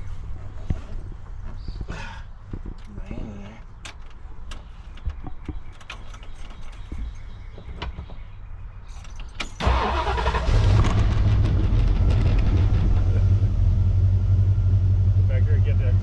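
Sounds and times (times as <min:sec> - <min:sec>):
car engine starting and idling: 0:09.2 - 0:16.0.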